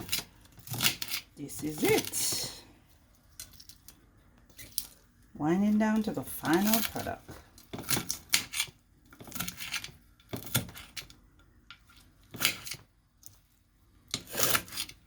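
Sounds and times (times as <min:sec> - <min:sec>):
utensils scraping a dish: 0:14.1 - 0:15.0.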